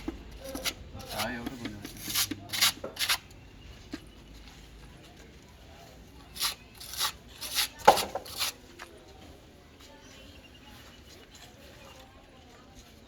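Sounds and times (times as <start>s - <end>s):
hand tool rubbing on block wall: 0.4s - 3.2s, 6.4s - 8.6s.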